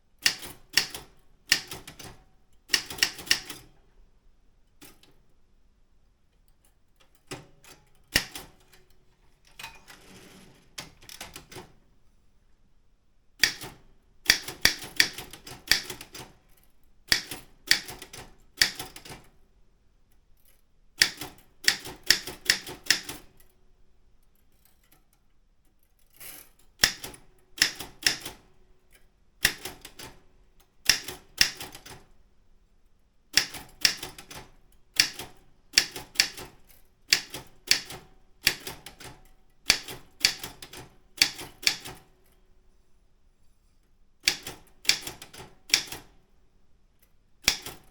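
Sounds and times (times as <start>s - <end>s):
typewriter keys clacking: 47.4s - 47.9s.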